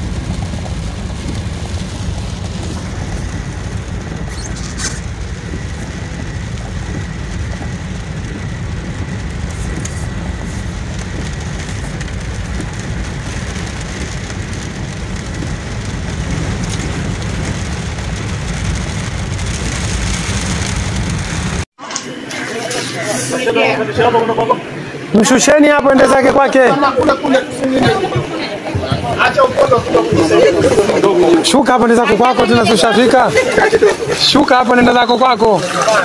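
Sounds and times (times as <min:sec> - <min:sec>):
vehicle engine rumble: 0:00.0 - 0:21.7
constant noisy hiss: 0:00.0 - 0:36.0.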